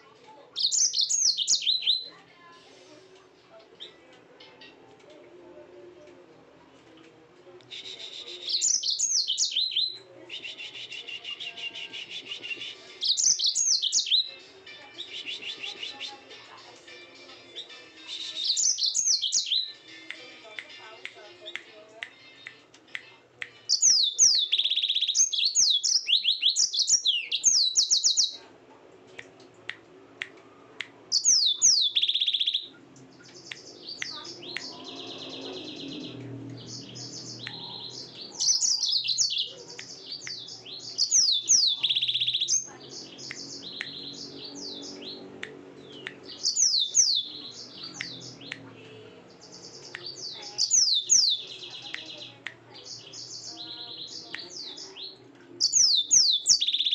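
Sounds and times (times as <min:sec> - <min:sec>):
canary singing trills: 0:00.5 - 0:02.2, 0:07.7 - 0:16.3, 0:17.5 - 0:19.9, 0:23.6 - 0:28.4, 0:31.1 - 0:56.9.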